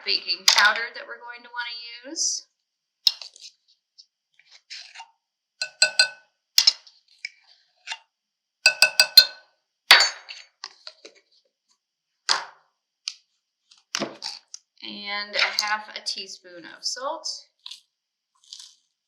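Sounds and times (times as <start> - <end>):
spoon clinking on container: 5.6 - 6.2, 8.7 - 10.2
spoon scraping: 5.6 - 6.2, 8.7 - 9.4.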